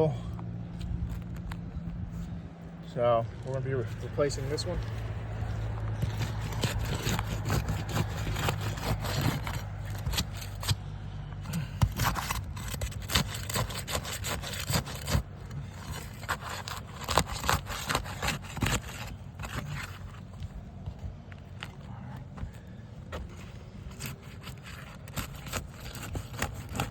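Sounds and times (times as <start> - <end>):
low hum: 0.0 - 26.9
roof shingles scraping and rubbing: 3.8 - 10.9, 11.5 - 20.6, 21.4 - 26.9.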